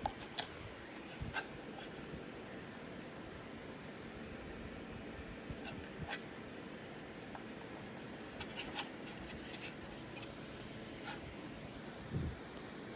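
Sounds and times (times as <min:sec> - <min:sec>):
handling clicks and rubbing: 0:07.3 - 0:11.2.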